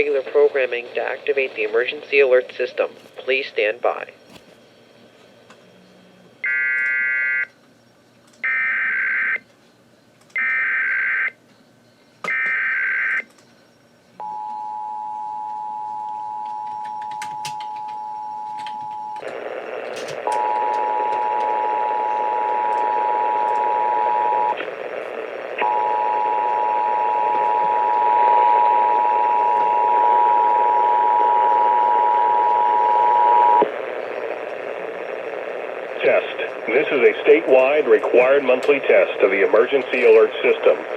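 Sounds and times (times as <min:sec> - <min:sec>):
radio hiss: 0:00.0 - 0:05.2, 0:19.2 - 0:40.9.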